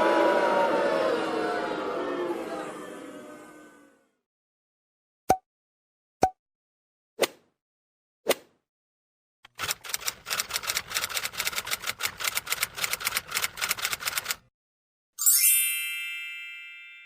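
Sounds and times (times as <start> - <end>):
rapid typewriter keystrokes: 9.5 - 14.4.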